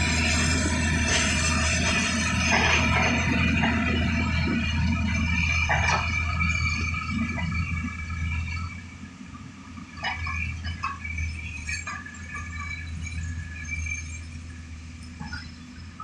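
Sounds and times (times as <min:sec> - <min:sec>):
diesel engine humming: 0:00.0 - 0:16.0
metallic squeaks and clinks: 0:00.2 - 0:09.0, 0:10.0 - 0:16.0.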